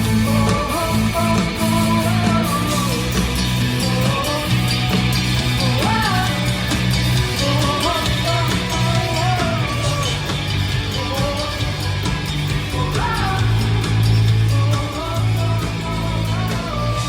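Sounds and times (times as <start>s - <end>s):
rock band playing live: 0.0s - 17.0s
woman singing: 5.6s - 6.4s, 12.7s - 17.0s.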